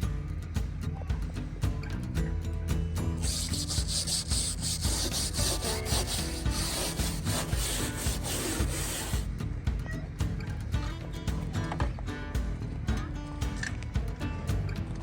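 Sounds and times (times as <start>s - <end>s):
background music: 0.0s - 15.0s
abrasive rubbing on wood: 3.2s - 9.3s.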